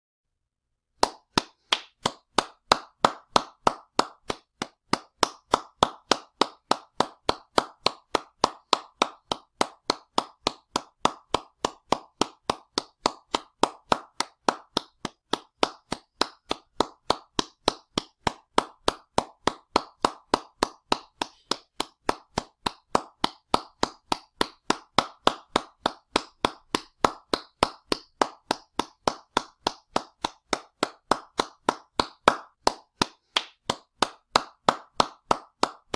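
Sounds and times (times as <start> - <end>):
hands clapping: 1.0 - 35.9.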